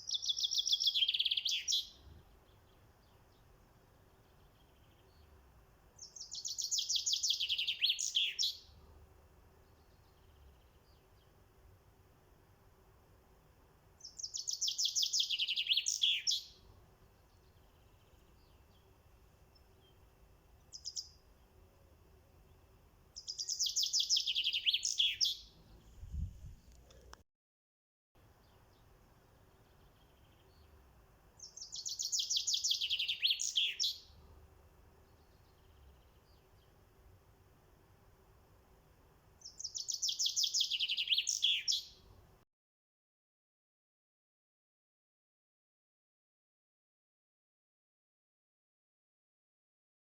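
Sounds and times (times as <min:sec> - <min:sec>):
sparrow chirping: 0:00.0 - 0:03.5, 0:06.0 - 0:08.8, 0:14.0 - 0:18.9, 0:20.6 - 0:21.3, 0:23.2 - 0:26.3, 0:31.4 - 0:34.2, 0:39.4 - 0:42.0
songbird singing: 0:00.0 - 0:12.6, 0:13.8 - 0:27.2, 0:28.2 - 0:37.5, 0:39.4 - 0:42.1.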